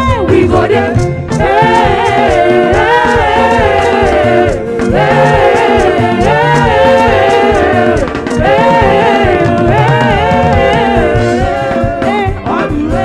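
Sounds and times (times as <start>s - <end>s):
gospel singing with band: 0.0s - 13.0s.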